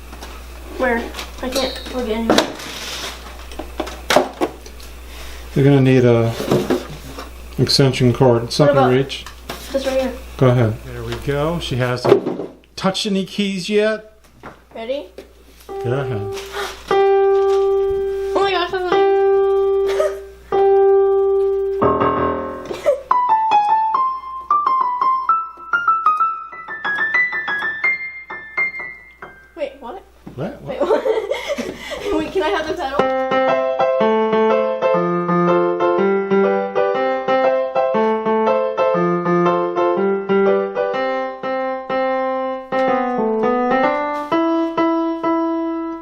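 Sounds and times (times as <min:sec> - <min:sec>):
electronic keyboard notes: 0:01.4 - 0:02.3, 0:15.7 - 0:29.9, 0:32.7 - 0:46.0.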